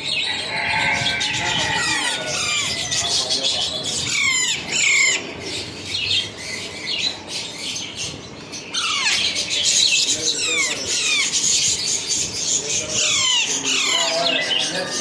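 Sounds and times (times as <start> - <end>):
parrot squawking: 0.2 - 5.5, 8.7 - 15.0.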